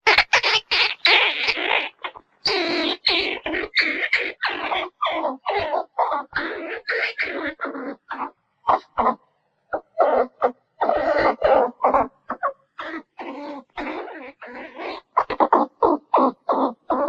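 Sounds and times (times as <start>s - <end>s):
squirrel chirping and barking: 0.1s - 17.0s.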